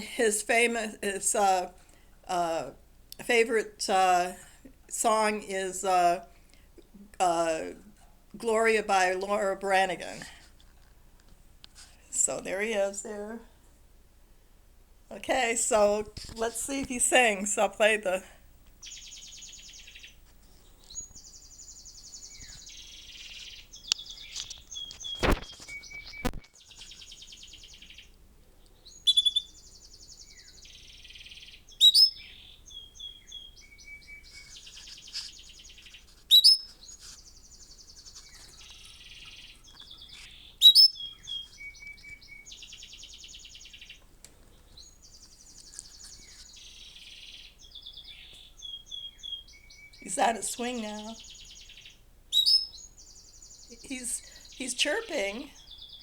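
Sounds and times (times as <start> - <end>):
recorded canary trills: 0.0 - 56.0
canary chirping: 18.8 - 56.0.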